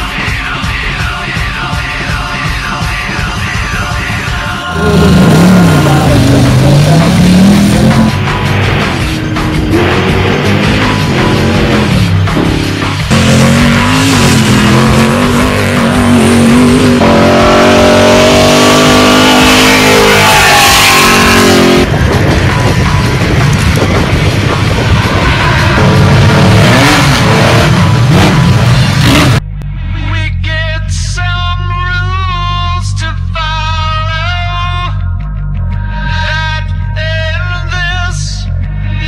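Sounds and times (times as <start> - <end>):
heavy rock music: 0.0 - 39.0
race car engines revving: 4.7 - 29.9.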